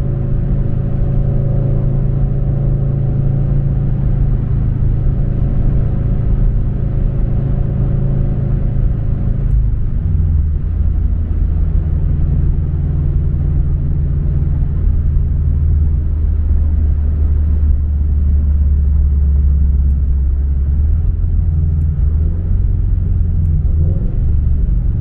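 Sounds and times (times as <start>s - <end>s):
car engine and exhaust rumble: 0.0s - 25.0s.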